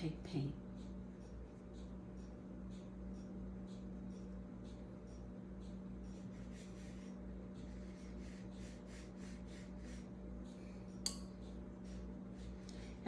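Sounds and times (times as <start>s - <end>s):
paintbrush stroking paper: 6.1s - 10.1s.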